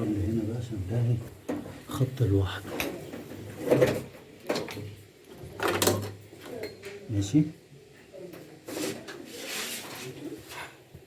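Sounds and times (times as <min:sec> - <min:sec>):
scraping rustle: 0:08.6 - 0:10.7.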